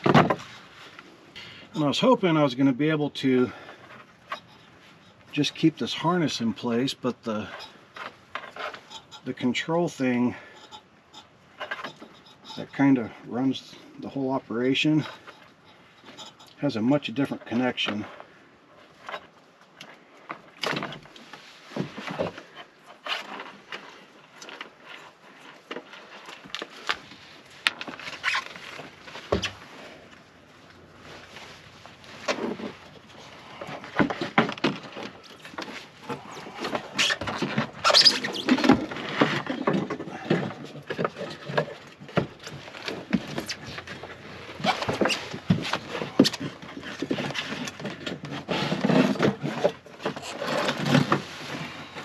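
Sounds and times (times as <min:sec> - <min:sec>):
parts being handled: 0:17.3 - 0:52.0.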